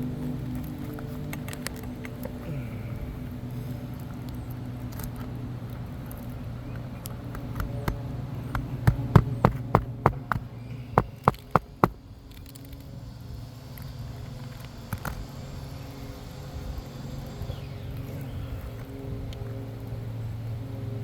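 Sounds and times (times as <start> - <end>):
steady low hum: 0.0 - 21.0
sharp knocks or taps: 7.3 - 12.0.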